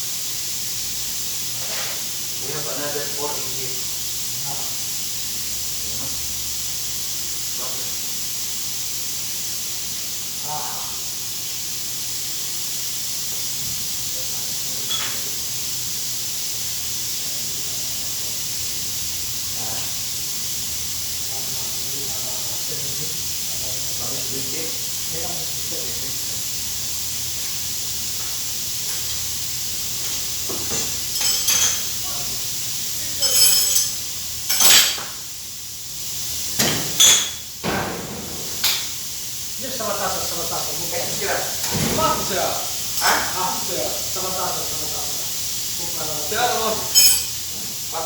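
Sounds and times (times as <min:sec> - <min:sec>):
steady hiss: 0:00.0 - 0:48.0
metal tools clinking together: 0:14.8 - 0:15.2, 0:30.1 - 0:32.2, 0:33.2 - 0:35.2, 0:46.7 - 0:47.4
short metallic clink: 0:47.0 - 0:47.4.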